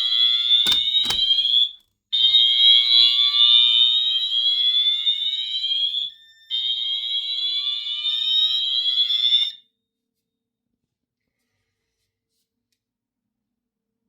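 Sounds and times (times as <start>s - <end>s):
fire alarm whoop tone: 2.2s - 9.6s.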